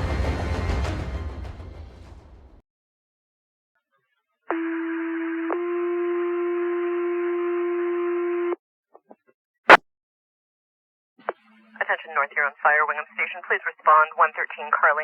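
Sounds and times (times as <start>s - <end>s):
radio hiss: 11.2s - 15.0s.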